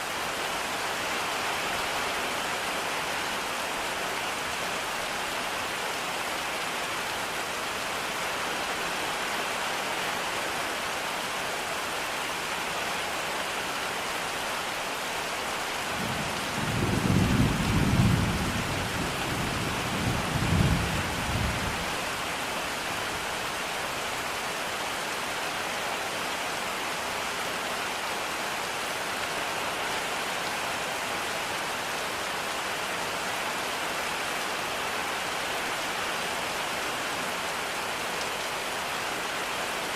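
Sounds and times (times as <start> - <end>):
steady rain: 0.0 - 39.9
low roll of thunder: 16.0 - 21.8.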